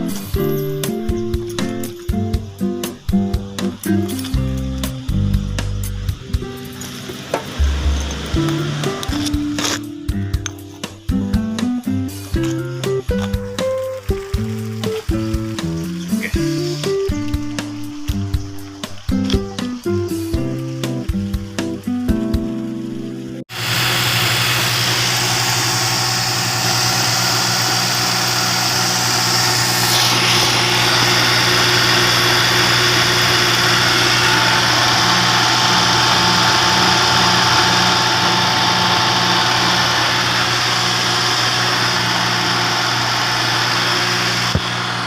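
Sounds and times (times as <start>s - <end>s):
air-conditioner compressor humming: 0.0s - 22.9s, 23.5s - 45.0s.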